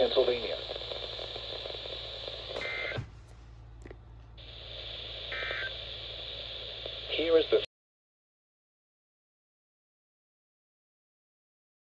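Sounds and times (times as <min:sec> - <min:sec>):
radio receiver hiss: 0:00.0 - 0:07.7.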